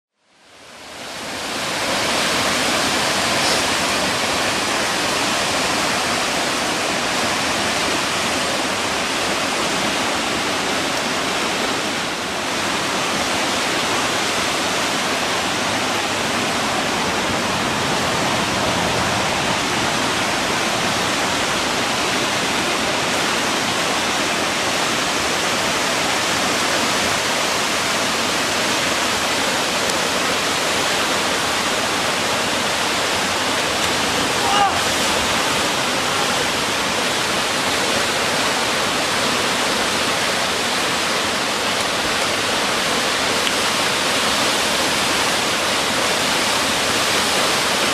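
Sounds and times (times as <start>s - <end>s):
fast-flowing floodwater rushing: 0.2s - 47.9s.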